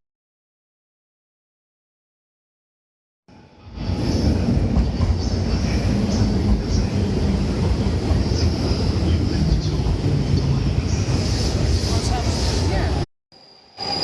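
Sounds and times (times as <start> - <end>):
train rumbling on rails: 3.3 - 14.0
high wheel squeals: 13.4 - 14.0.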